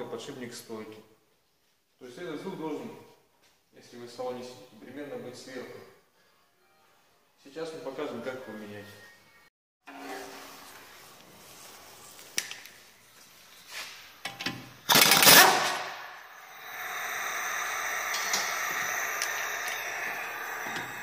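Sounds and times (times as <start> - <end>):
impact wrench rattling burst: 14.8 - 21.0
steady hiss: 15.8 - 21.0.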